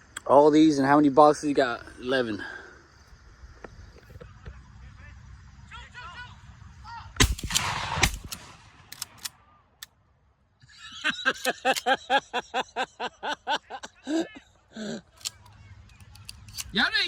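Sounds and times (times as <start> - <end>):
shotgun shots with echo: 7.2 - 9.5.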